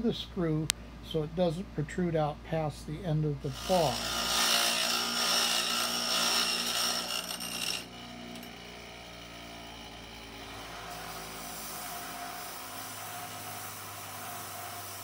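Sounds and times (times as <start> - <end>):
grinder grating on metal: 3.5 - 15.0
grinder motor humming: 3.5 - 15.0.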